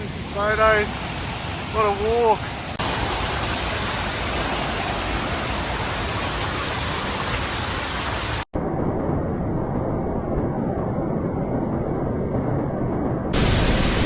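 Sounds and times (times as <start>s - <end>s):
waterfall rushing: 0.0s - 8.5s, 13.4s - 14.0s.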